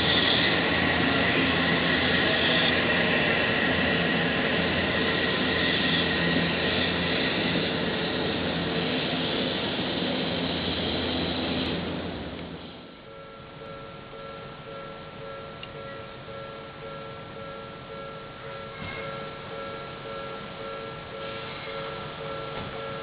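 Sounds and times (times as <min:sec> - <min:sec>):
electric train passing: 0:00.0 - 0:23.0.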